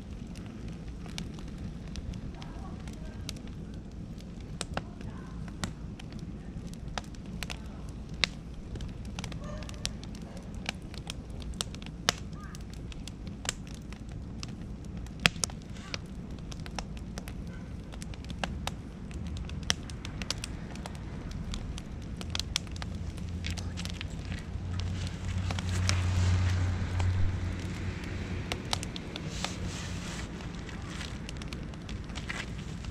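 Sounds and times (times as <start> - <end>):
bonfire crackling and popping: 0.0 - 32.9
low rumble: 18.0 - 32.9.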